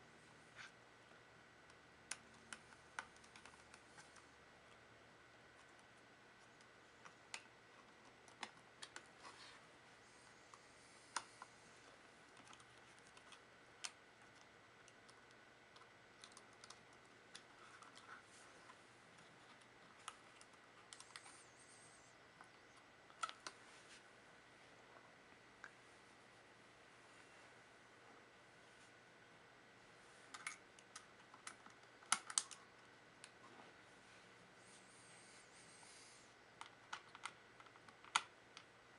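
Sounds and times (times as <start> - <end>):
laptop keys clicking and tapping: 1.7 - 4.8, 5.5 - 9.2, 12.3 - 18.2, 19.1 - 21.4, 30.3 - 33.4, 36.6 - 38.7.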